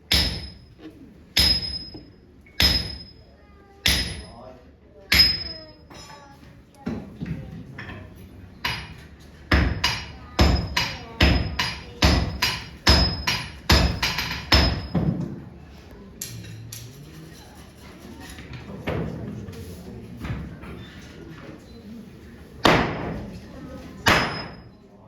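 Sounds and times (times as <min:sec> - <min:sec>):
hammer striking steel on anvil: 0:00.1 - 0:00.8, 0:01.4 - 0:03.2, 0:03.8 - 0:04.4, 0:05.1 - 0:06.2, 0:08.6 - 0:15.1, 0:24.0 - 0:24.7.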